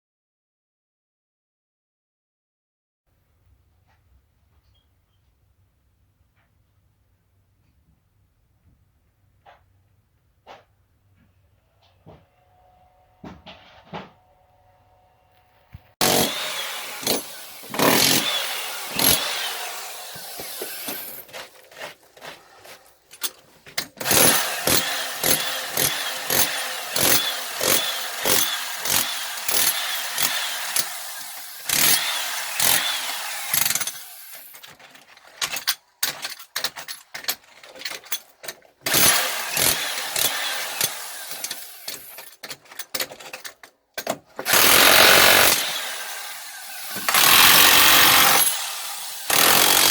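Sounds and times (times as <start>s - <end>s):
power tool running: 16.0s - 21.9s, 24.0s - 34.6s, 44.4s - 49.9s.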